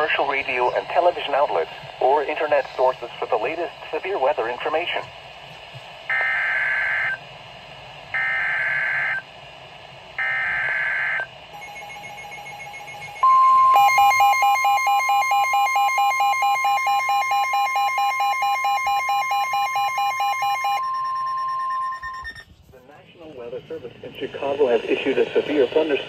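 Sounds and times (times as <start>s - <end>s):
steady warning alarm tone: 6.1s - 7.2s, 8.1s - 9.3s, 10.2s - 22.5s
screeching digital data tones: 10.2s - 22.5s
rapid alert beeping: 11.6s - 22.4s.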